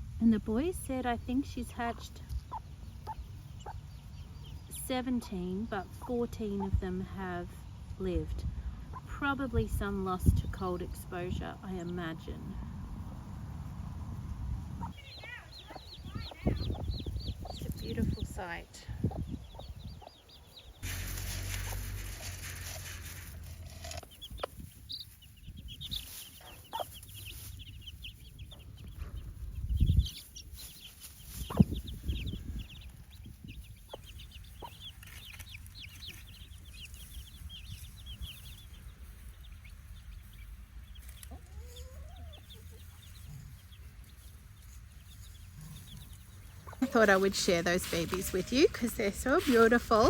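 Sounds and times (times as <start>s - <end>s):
chicks peeping: 0.6s - 8.0s, 8.6s - 50.0s
hen clucking softly: 2.3s - 3.9s, 26.4s - 27.1s, 41.0s - 43.8s.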